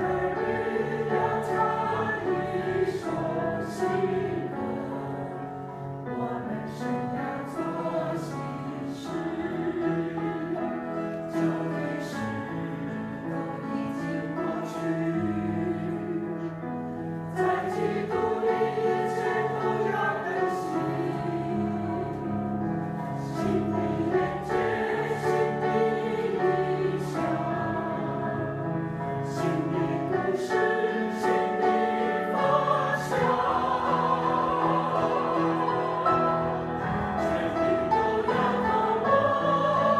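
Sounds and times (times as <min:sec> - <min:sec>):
choir singing hymn: 0:00.0 - 0:39.9
instrumental accompaniment: 0:20.9 - 0:39.9.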